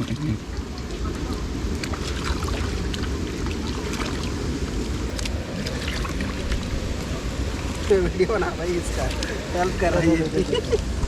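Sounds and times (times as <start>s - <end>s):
small splashes: 0.0s - 8.0s
stream water rushing: 0.0s - 11.0s.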